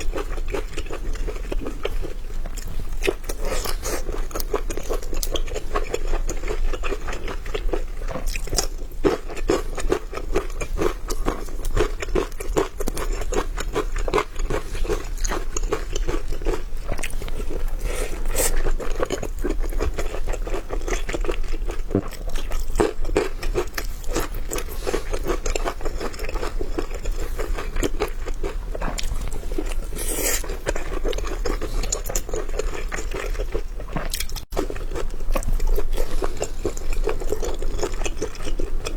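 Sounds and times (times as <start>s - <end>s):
person chewing crunchy food: 0.0s - 38.9s.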